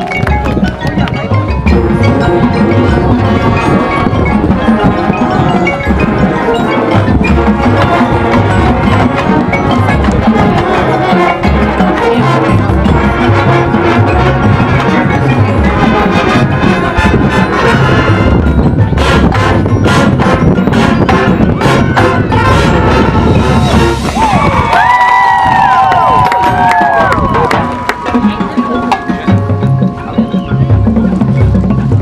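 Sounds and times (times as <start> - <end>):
mallet percussion and chimes: 0.0 - 32.0
marching band playing: 0.0 - 32.0
sharp percussion strikes: 0.0 - 32.0.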